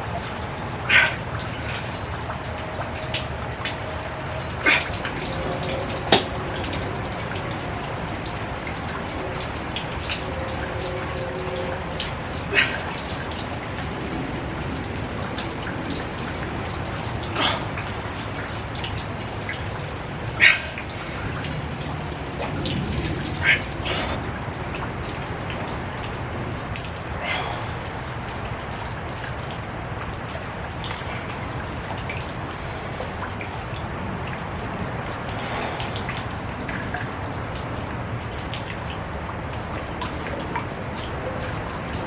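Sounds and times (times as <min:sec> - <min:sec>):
steady rain falling: 0:00.0 - 0:42.0.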